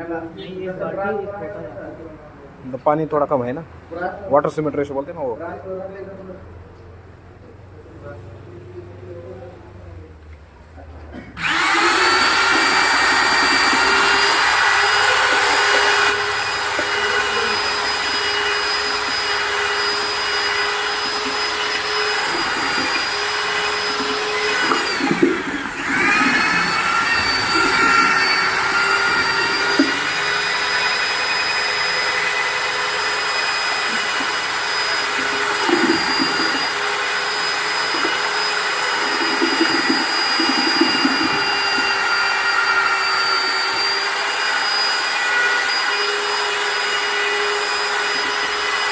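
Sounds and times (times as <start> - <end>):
power tool motor whining: 11.4 - 48.9.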